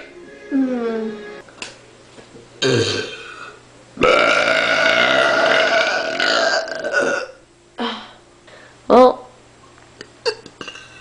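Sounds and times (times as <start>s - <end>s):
person burping: 2.6s - 7.4s, 10.2s - 11.0s.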